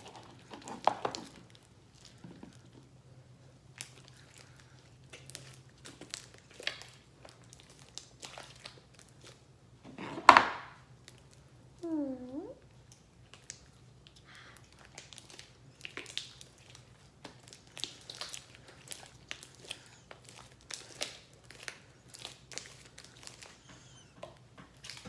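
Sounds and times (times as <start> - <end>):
slime squelch: 0.0 - 9.8, 10.8 - 25.0
sticky slime clicks and crackles: 3.7 - 9.1, 12.8 - 23.6.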